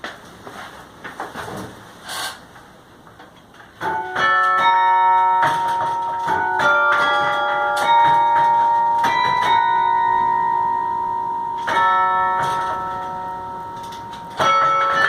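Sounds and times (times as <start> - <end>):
carillon bells melody: 3.8 - 15.0.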